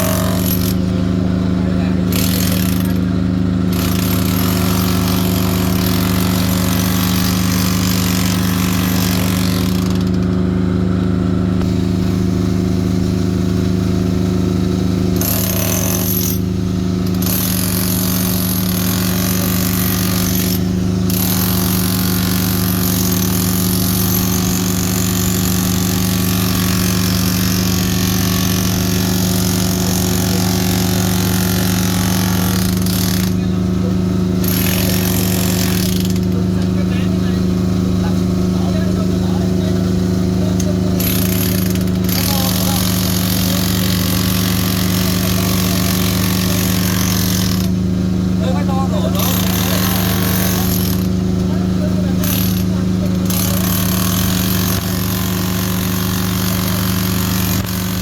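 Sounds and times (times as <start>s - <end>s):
tool grinding into concrete: 0.0s - 10.4s, 15.0s - 58.0s
motor hum: 0.0s - 58.0s.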